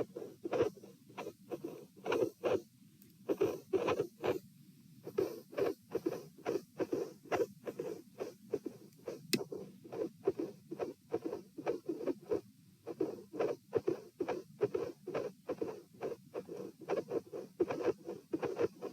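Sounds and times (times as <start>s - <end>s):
heartbeat through stethoscope: 3.3s - 4.4s, 5.0s - 18.9s.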